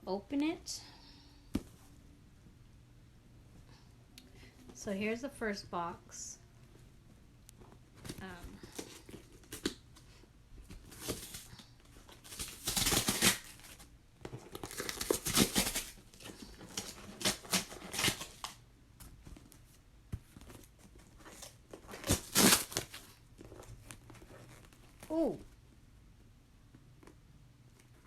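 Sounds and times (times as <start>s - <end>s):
packaging tape tearing and crinkling: 8.1s - 9.8s, 10.8s - 18.6s, 21.2s - 25.2s.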